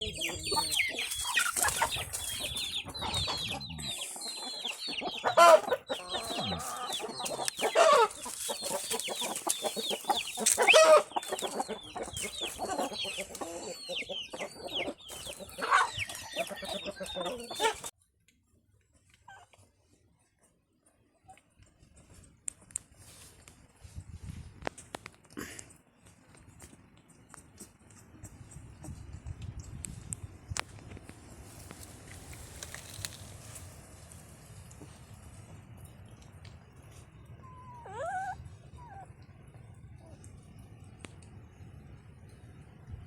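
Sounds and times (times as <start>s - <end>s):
small animals squeaking: 0.0s - 17.9s, 37.4s - 39.1s.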